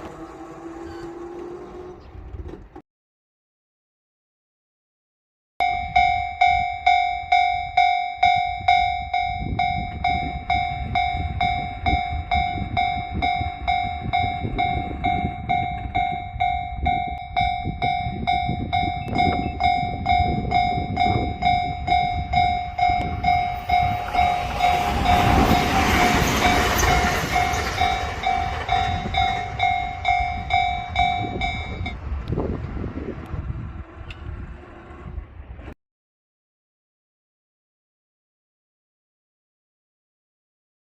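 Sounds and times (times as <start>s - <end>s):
train passing rush and rumble: 0.0s - 2.8s, 5.6s - 35.8s
level crossing warning bell: 5.6s - 32.0s.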